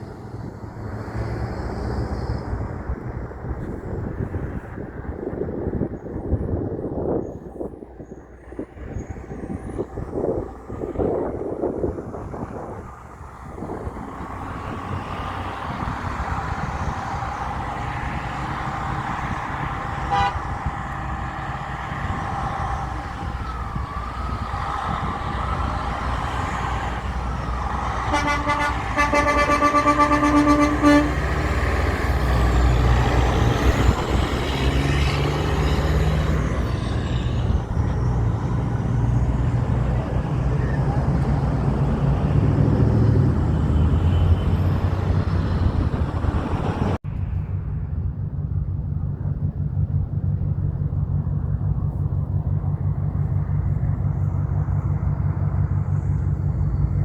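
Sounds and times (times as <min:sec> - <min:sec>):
truck engine approaching: 0:00.0 - 0:57.0
truck horn blast: 0:18.8 - 0:21.5, 0:27.5 - 0:32.5.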